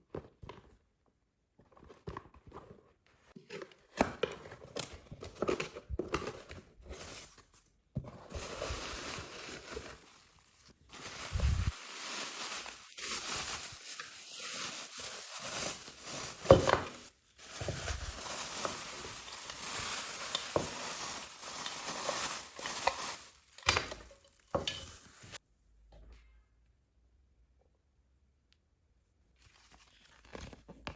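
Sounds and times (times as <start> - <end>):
packaging rustling: 8.1 - 25.4.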